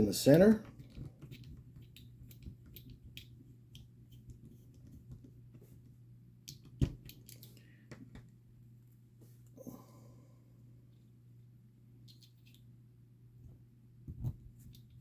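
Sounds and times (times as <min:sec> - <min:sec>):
clicks of tiny screws and parts: 0:06.5 - 0:08.2.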